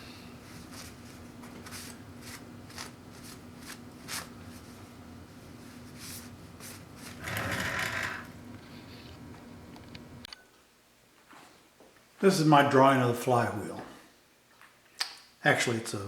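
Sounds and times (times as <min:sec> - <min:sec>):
steady low hum: 0:00.0 - 0:10.4
scraping rub: 0:05.8 - 0:09.1.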